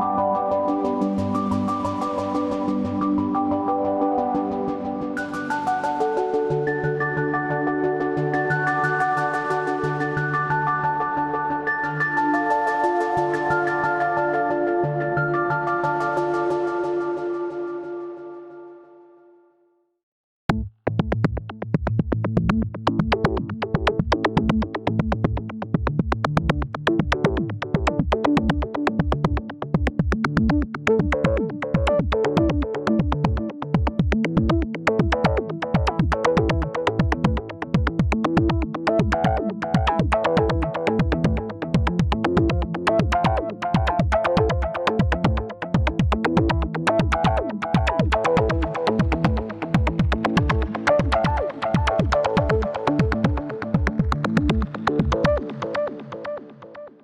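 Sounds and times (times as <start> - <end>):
synthesizer electronic pattern: 22.2 - 57.0.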